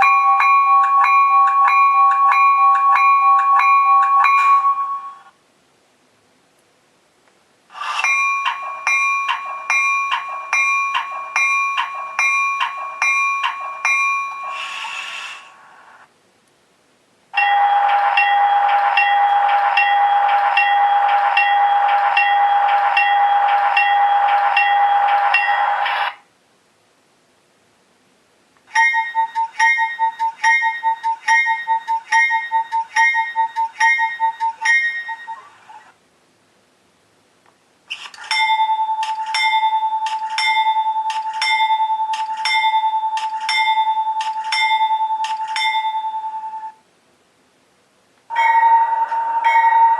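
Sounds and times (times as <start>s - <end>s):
locomotive bell ringing: 0.0s - 5.3s, 8.0s - 14.6s, 17.4s - 26.0s, 28.7s - 35.4s, 38.3s - 46.8s, 48.3s - 49.9s.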